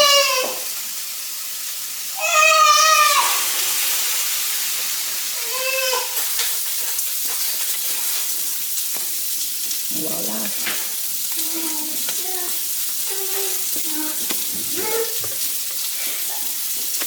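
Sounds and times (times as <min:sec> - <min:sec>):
child crying: 0:00.0 - 0:00.7, 0:02.2 - 0:03.5, 0:05.4 - 0:06.2, 0:11.4 - 0:15.2
food sizzling in a frying pan: 0:00.0 - 0:17.0.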